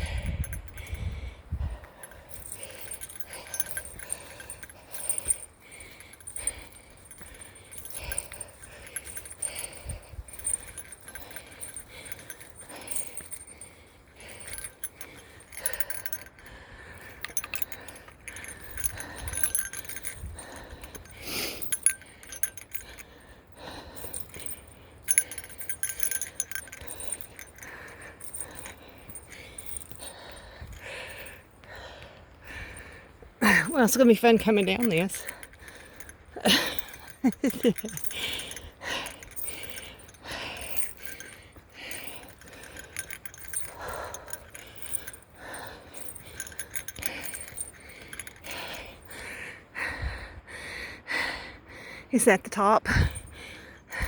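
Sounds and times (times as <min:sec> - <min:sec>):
small metal bell jingling: 0:00.0 - 0:50.5, 0:52.2 - 0:54.0
hiker's footsteps: 0:00.1 - 0:34.0.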